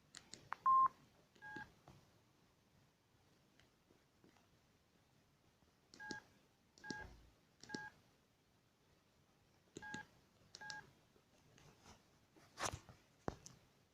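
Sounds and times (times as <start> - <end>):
two-tone keypad beep: 0.6 - 1.6.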